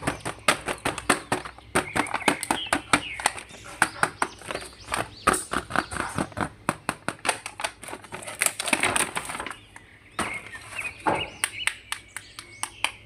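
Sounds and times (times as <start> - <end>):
plastic figures clicking and knocking: 0.0 - 13.0
packaging rustle: 7.1 - 9.7.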